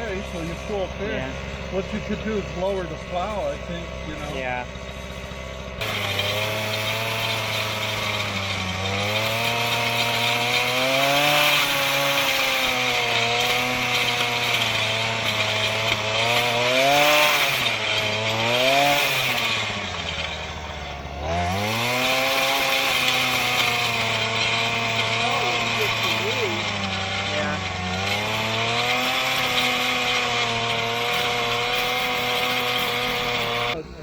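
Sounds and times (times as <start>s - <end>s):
tiller engine running: 0.0s - 34.0s.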